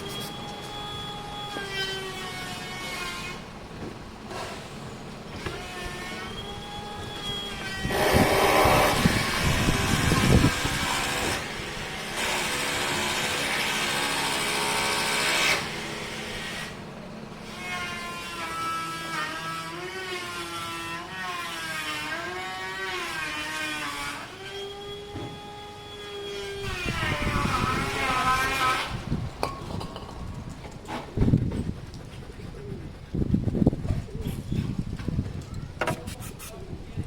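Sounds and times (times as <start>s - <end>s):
electric power tool motor whining: 0.0s - 3.4s, 5.4s - 16.8s, 17.4s - 29.1s.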